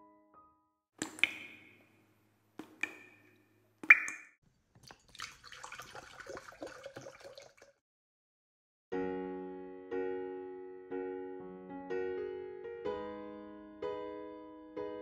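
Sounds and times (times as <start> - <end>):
liquid pouring and bubbling: 3.8 - 7.8.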